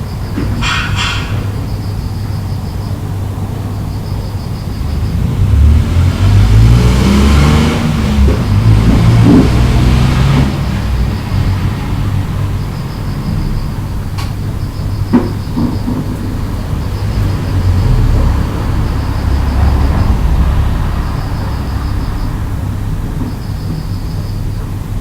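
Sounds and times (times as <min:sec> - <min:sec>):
motor vehicle passing: 0:03.0 - 0:24.8.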